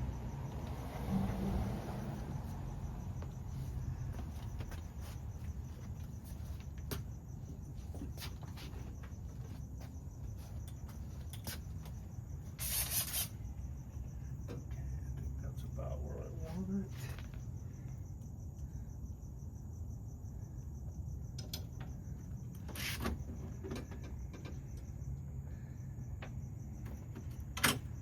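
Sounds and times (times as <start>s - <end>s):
crickets chirping: 0.0s - 28.0s
short burst of hiss: 12.6s - 13.3s.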